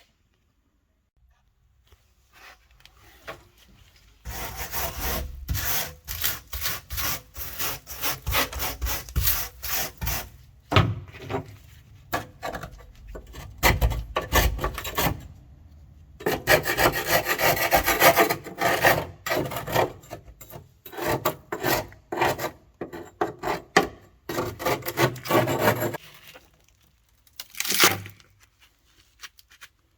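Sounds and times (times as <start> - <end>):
hand sanding scraping strokes: 4.2 - 10.4.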